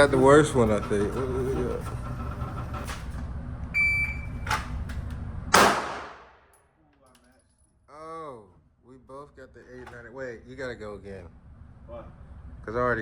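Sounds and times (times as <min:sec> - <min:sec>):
short electronic beep: 0:03.8 - 0:04.5.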